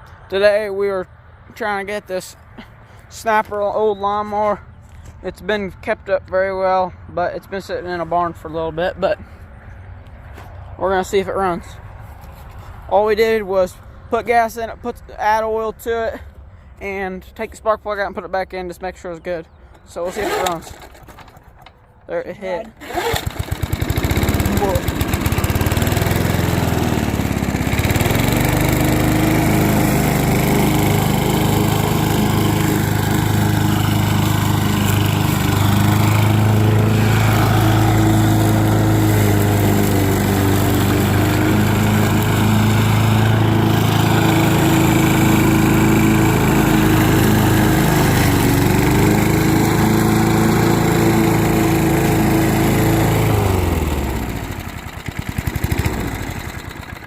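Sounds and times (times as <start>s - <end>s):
lawn mower engine running: 19.8s - 57.0s.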